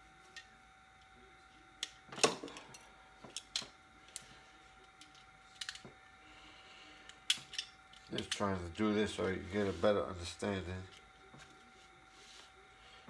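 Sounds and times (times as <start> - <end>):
faint steady whine: 0.0 - 13.0
hand tools and wire clicking: 1.8 - 6.0, 7.0 - 8.5.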